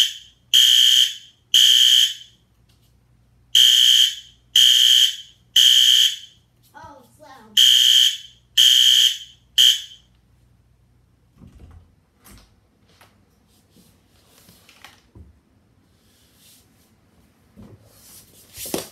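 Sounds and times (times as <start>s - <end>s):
fire alarm horn blast: 0.0s - 2.4s, 3.6s - 6.4s, 7.6s - 10.1s.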